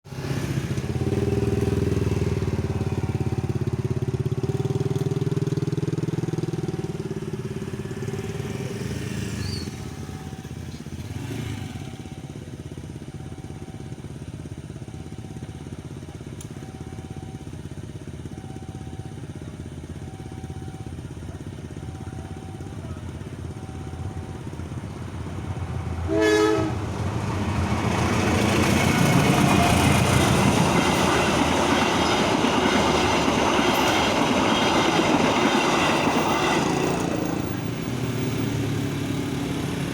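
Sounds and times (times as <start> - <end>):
motorcycles and traffic passing: 0.1 - 39.9
train rumble: 21.3 - 39.9
train horn: 26.1 - 27.0.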